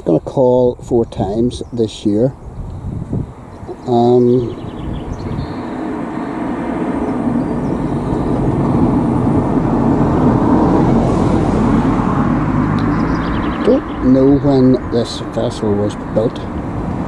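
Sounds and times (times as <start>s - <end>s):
passing vehicle engine rushing: 2.5s - 17.0s.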